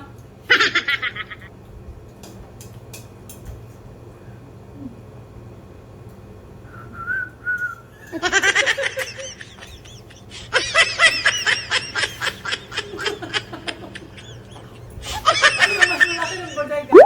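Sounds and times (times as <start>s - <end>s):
person whistling: 6.7s - 7.9s
hearty laughter: 8.0s - 16.8s.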